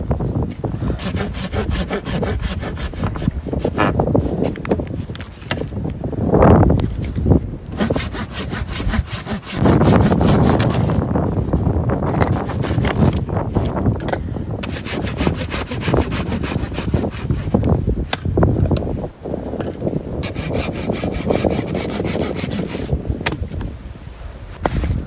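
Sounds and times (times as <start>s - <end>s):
hand saw cutting wood: 0.6s - 4.6s, 7.0s - 11.1s, 12.0s - 18.2s, 19.6s - 23.4s.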